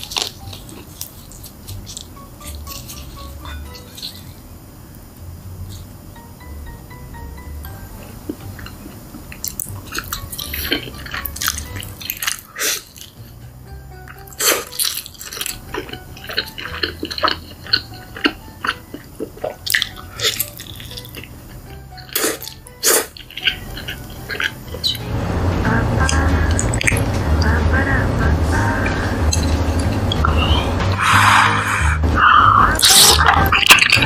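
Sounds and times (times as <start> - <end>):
wet chewing sounds: 0.0 - 4.3, 8.2 - 13.4, 14.0 - 25.0
soft background music: 0.0 - 34.0.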